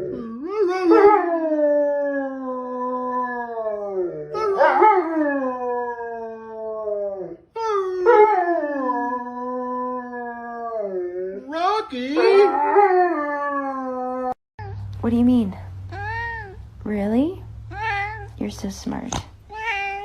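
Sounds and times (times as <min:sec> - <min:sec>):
dog howling: 0:00.5 - 0:14.4.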